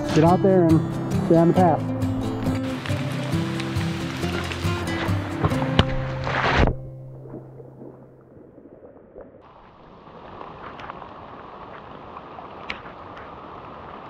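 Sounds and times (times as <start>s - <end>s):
steady rain hiss: 0.9s - 5.4s, 9.4s - 14.0s.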